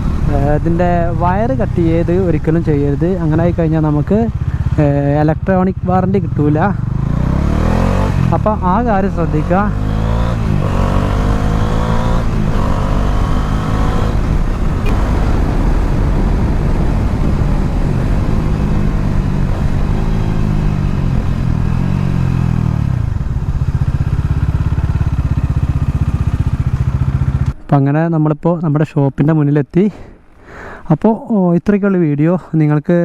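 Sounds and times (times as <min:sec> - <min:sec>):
motorcycle engine: 0:00.0 - 0:27.7
wind noise: 0:09.2 - 0:23.8.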